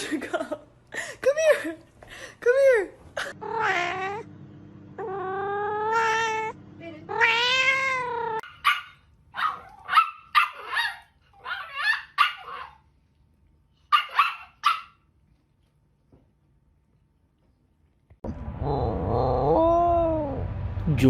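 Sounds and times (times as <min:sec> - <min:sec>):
cat meowing: 0:03.4 - 0:04.3, 0:05.0 - 0:08.6.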